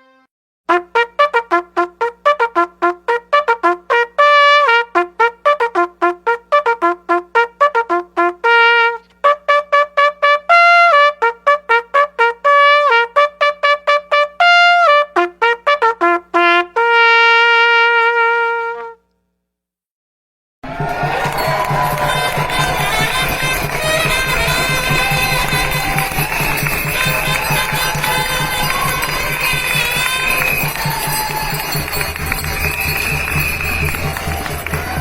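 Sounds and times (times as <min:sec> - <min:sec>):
solo trumpet playing: 0:00.0 - 0:19.1, 0:20.6 - 0:35.0.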